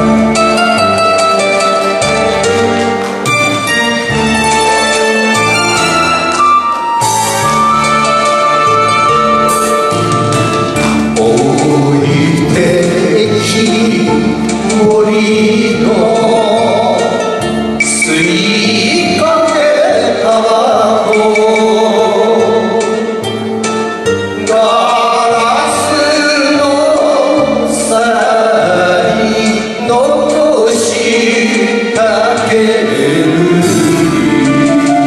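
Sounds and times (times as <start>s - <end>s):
instrumental backing music: 0.0s - 35.0s
man singing: 9.8s - 35.0s.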